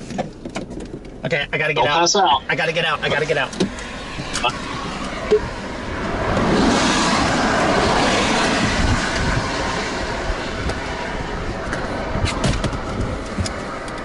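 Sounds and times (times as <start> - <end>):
storm wind buffeting microphone: 2.8 - 14.0.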